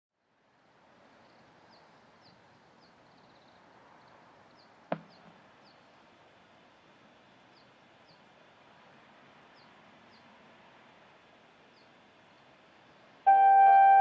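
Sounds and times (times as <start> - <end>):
faint background hiss: 0.2 - 14.0
small bird chirping: 1.2 - 5.8
bird trill: 13.3 - 14.0.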